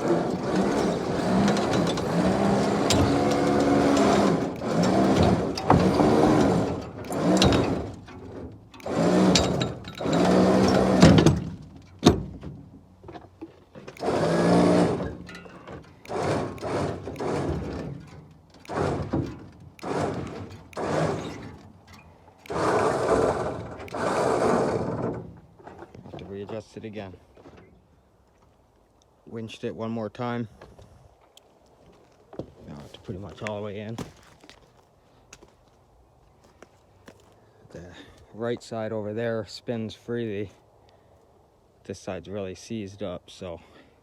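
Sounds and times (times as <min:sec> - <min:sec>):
winch motor whining: 0:00.0 - 0:12.6, 0:13.8 - 0:25.5.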